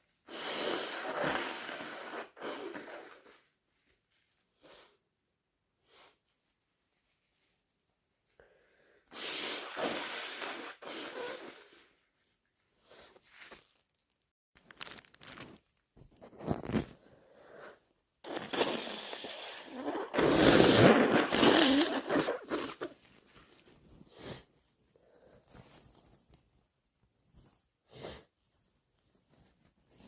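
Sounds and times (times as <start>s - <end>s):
person blowing nose into tissue: 0.1s - 3.6s, 4.5s - 5.0s, 5.8s - 6.3s, 8.4s - 12.0s, 16.5s - 23.1s, 24.0s - 25.7s, 27.9s - 28.4s.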